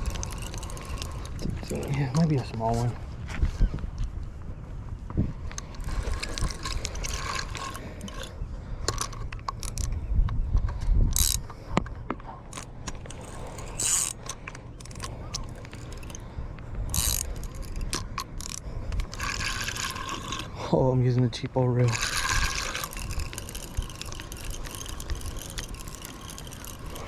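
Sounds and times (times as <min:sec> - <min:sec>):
fishing reel ratcheting: 0:00.0 - 0:02.6, 0:05.6 - 0:10.0, 0:10.8 - 0:11.5, 0:12.5 - 0:16.2, 0:16.8 - 0:20.6, 0:21.8 - 0:27.0.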